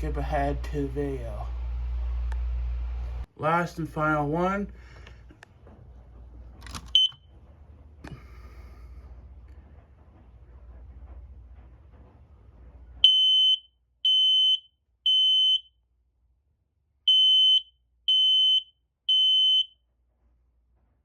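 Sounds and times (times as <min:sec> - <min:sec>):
smoke alarm beeping: 0:07.0 - 0:07.2, 0:13.0 - 0:15.7, 0:17.1 - 0:19.7.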